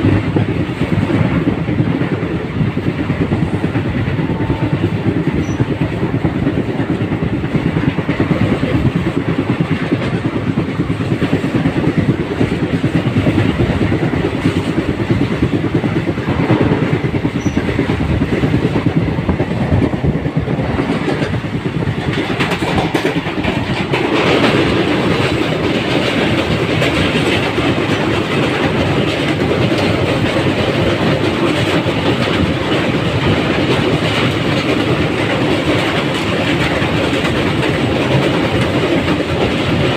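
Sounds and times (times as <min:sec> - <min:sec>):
train wheels clattering on rails: 0:00.0 - 0:39.9.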